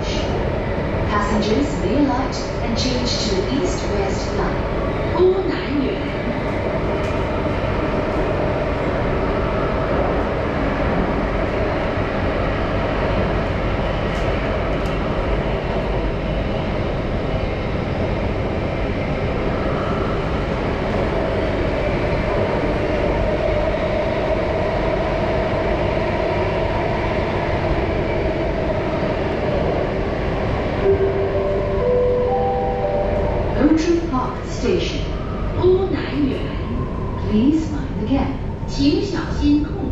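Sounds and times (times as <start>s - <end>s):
train wheels rumbling on rail: 0.0s - 31.9s.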